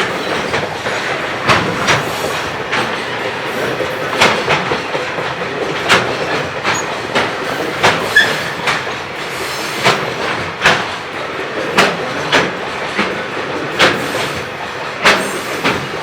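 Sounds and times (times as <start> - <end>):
train rumbling: 0.0 - 16.0
train wheels clacking over rail joints: 0.0 - 16.0.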